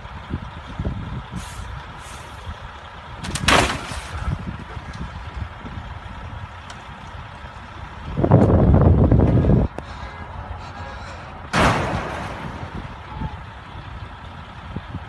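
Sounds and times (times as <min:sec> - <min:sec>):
traffic rumbling: 0:00.0 - 0:15.0
truck air brakes hissing: 0:01.3 - 0:02.6, 0:09.8 - 0:11.7.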